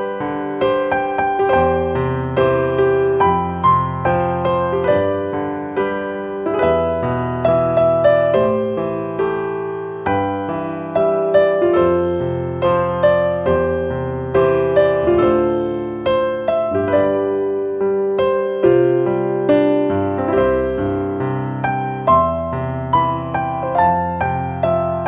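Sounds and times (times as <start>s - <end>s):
gentle piano melody: 0.0s - 25.0s.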